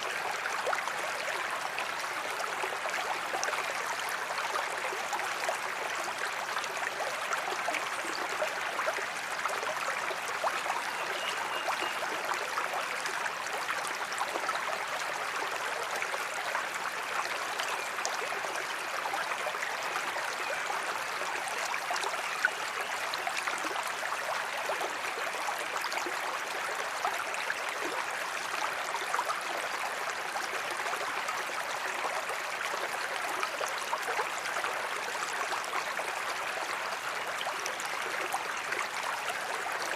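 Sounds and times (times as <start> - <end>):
creek babbling over stones: 0.0 - 39.9.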